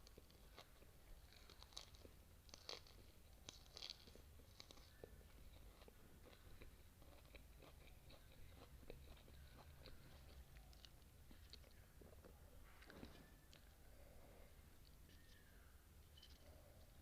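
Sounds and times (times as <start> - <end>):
mouth chewing food: 0.0 - 17.0.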